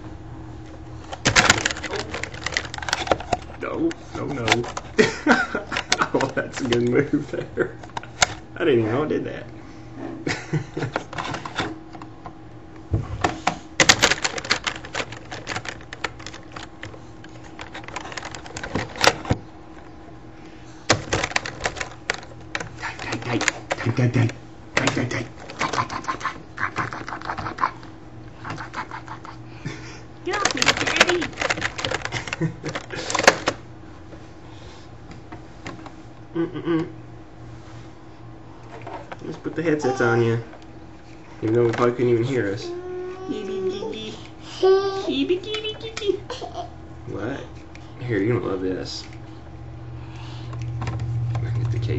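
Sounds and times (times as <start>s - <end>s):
low steady hum: 0.0s - 51.9s
computer keyboard keys clattering: 1.2s - 7.1s, 13.8s - 19.4s, 20.9s - 27.7s, 30.3s - 33.6s
baby cooing: 39.7s - 40.4s, 42.6s - 45.1s.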